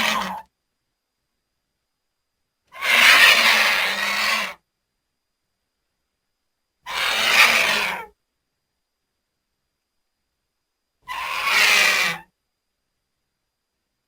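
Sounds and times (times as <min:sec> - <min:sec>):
vulture hissing calls: 0:00.0 - 0:00.5, 0:02.7 - 0:04.6, 0:06.9 - 0:08.1, 0:11.1 - 0:12.3.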